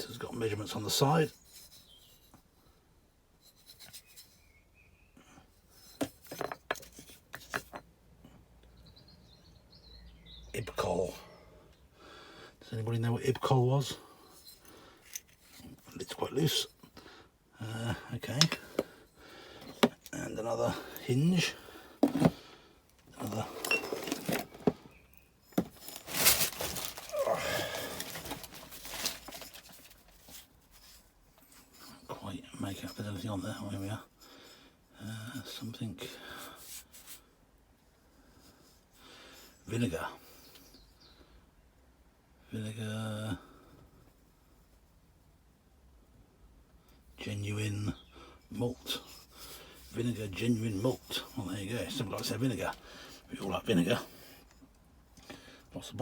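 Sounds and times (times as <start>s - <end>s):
debris scraping and rustling: 22.0s - 22.4s, 23.0s - 31.0s
glass bottles clinking: 23.2s - 24.8s.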